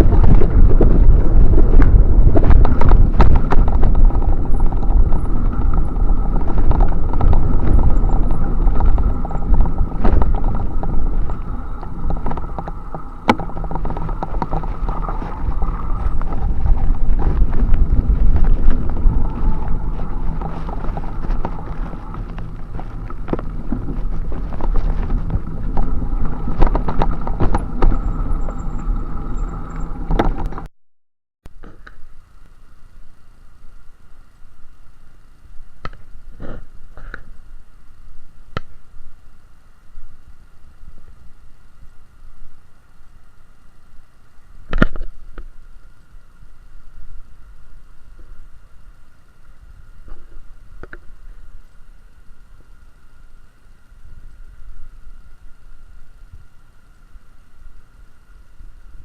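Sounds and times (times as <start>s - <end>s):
bicycle clicking and rattling: 0.0s - 30.7s
bicycle rumble: 0.0s - 30.7s, 31.5s - 59.0s.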